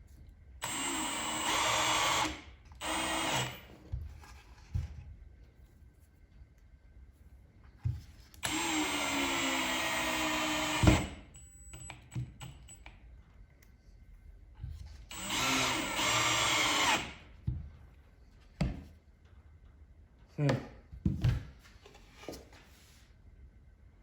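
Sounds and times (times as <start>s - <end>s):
power drill under load: 0.6s - 3.7s, 8.4s - 11.2s, 15.1s - 17.2s.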